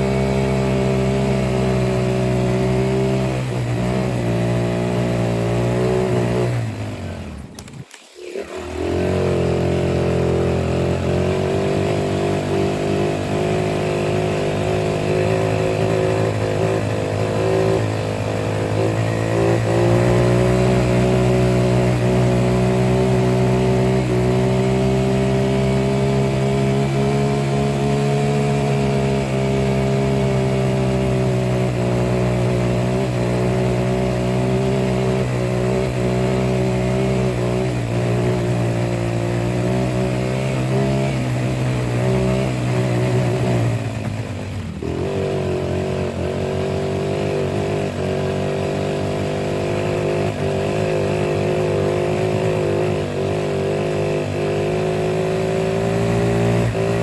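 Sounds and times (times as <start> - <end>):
vehicle engine running: 0.0 - 57.0.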